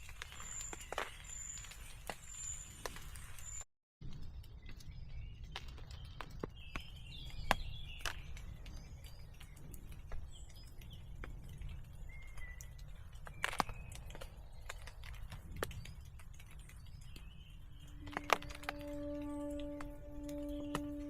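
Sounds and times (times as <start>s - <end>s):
birds chirping: 4.3s - 21.0s
whistled bird note: 17.8s - 21.0s.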